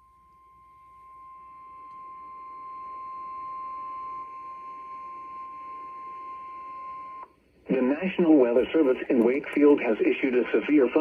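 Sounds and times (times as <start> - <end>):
low radio hiss: 7.2 - 11.0.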